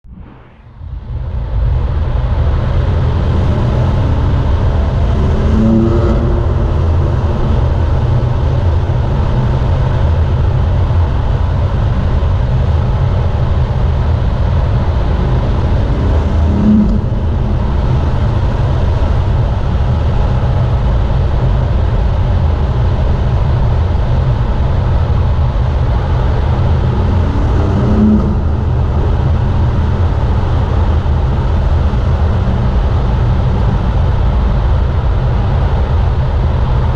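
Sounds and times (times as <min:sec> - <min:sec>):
car engine at speed: 0:00.0 - 0:36.9
wind and road noise: 0:00.0 - 0:36.9
rising engine note: 0:02.4 - 0:10.6, 0:12.9 - 0:21.6, 0:24.8 - 0:35.4.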